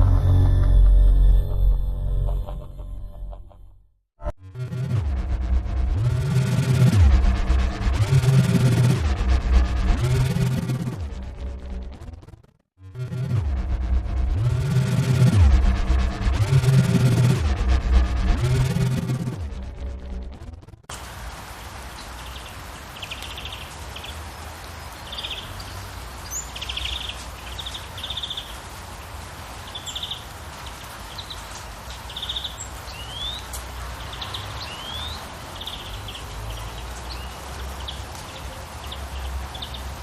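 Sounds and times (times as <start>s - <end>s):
steady hiss and low rumble: 4.9s - 12.0s
small birds trilling: 21.5s - 28.8s, 29.6s - 40.0s.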